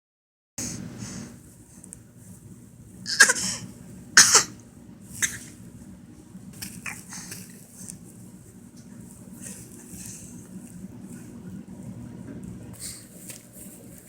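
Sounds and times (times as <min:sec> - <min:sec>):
person coughing: 0:03.1 - 0:04.6.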